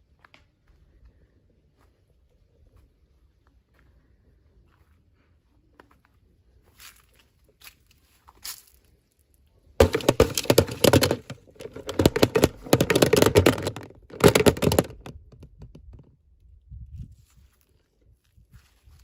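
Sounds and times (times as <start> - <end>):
plastic packaging crinkling: 9.8 - 15.1.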